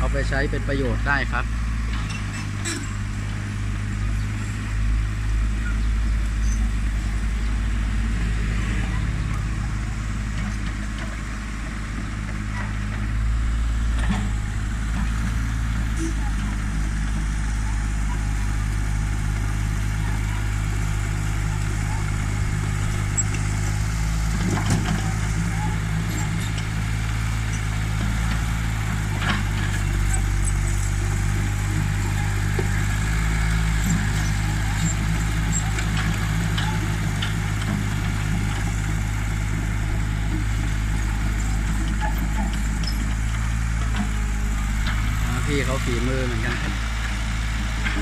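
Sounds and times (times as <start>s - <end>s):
backhoe engine running: 0.0s - 48.0s.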